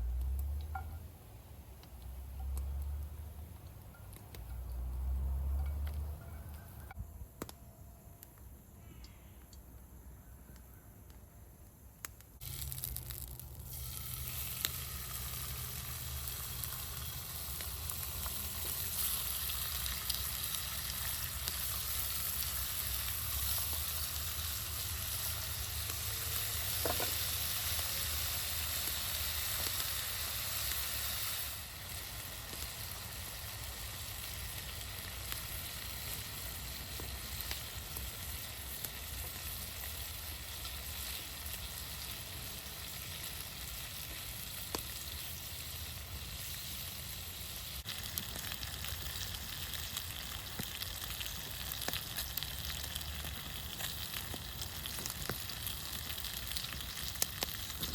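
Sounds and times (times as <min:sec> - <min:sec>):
bacon sizzling in a frying pan: 0:12.4 - 0:57.9.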